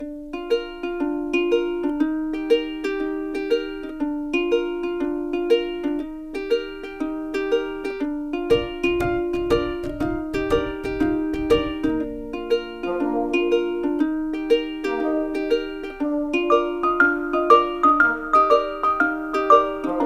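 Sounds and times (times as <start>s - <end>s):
plucked string melody: 0.0s - 20.0s
steady beat: 6.3s - 20.0s.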